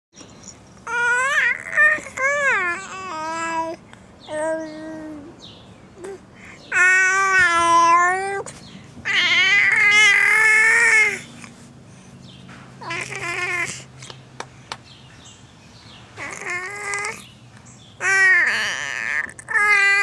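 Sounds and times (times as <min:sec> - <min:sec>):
baby squealing: 0:00.8 - 0:05.3, 0:06.0 - 0:08.5, 0:09.1 - 0:11.3, 0:12.8 - 0:13.9, 0:16.2 - 0:17.3, 0:18.0 - 0:20.0.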